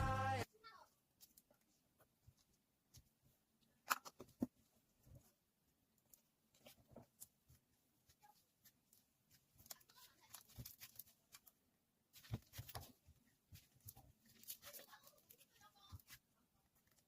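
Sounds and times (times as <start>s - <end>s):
small objects clicking and rustling: 8.2s - 11.6s, 13.6s - 16.2s.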